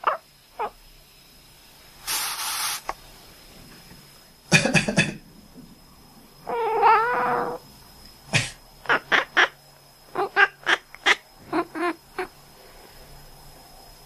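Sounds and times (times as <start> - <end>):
short breathy hiss: 2.0 - 3.4
cat meowing: 6.5 - 7.6.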